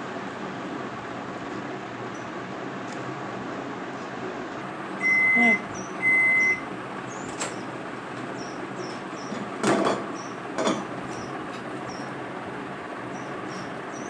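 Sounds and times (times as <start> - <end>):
microwave oven beep: 4.8 - 12.1.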